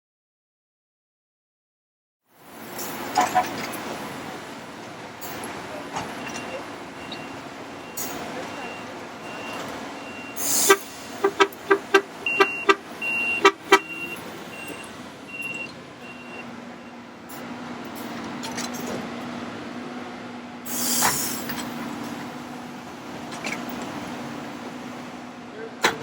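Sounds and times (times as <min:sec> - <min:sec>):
engine running: 0:02.4 - 0:26.0
high backup alarm beeping: 0:06.2 - 0:17.1
hiss-like burst: 0:20.7 - 0:21.5.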